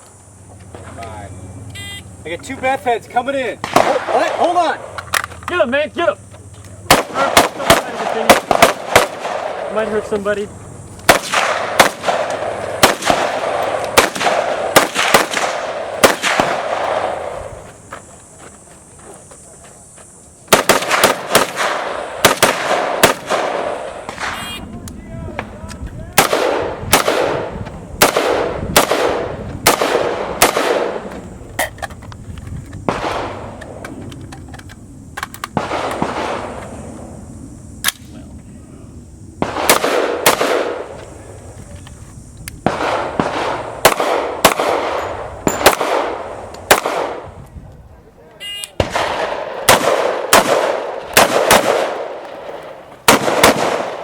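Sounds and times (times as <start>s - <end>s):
semi-automatic gunfire: 3.6s - 4.7s, 6.9s - 9.8s, 11.1s - 17.4s, 20.5s - 24.6s, 26.2s - 31.1s, 35.6s - 36.6s, 39.4s - 40.9s, 42.7s - 47.3s, 48.8s - 54.0s.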